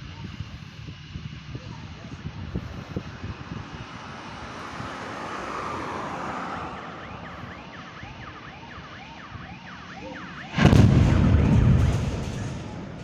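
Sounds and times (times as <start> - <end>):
steady background noise: 0.0 - 13.0
emergency vehicle siren yelping: 4.6 - 13.0.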